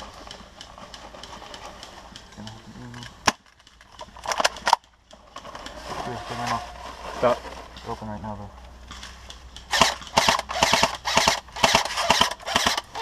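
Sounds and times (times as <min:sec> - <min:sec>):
airsoft gun shots: 0:09.7 - 0:13.0.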